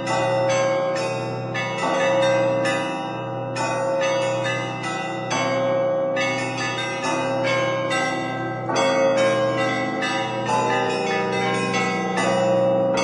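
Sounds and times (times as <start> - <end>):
low hum of big bells: 0.0 - 13.0
small church bells striking: 0.0 - 13.0.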